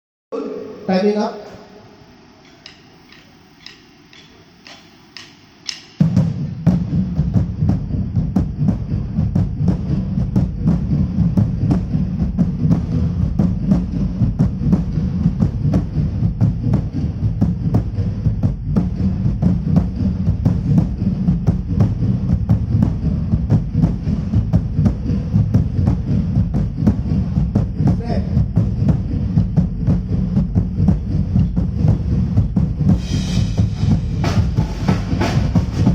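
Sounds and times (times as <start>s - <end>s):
soft ticks: 2.4s - 5.9s
bass-heavy music over speakers: 6.0s - 35.9s.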